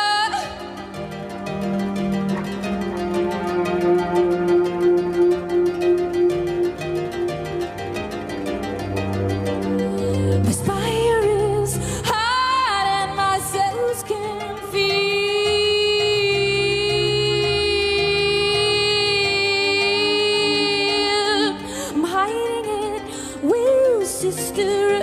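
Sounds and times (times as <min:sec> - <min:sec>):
woman singing: 0:00.0 - 0:01.1, 0:09.9 - 0:25.0
instrumental accompaniment: 0:00.0 - 0:25.0.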